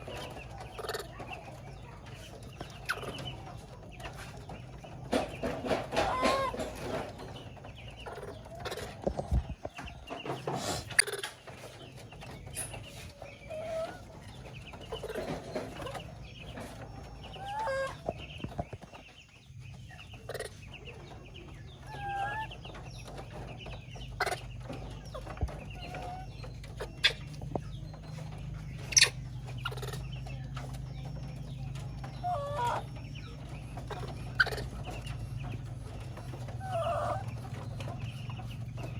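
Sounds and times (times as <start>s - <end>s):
animal calls: 5.1s - 7.3s, 12.6s - 18.4s, 21.6s - 38.9s.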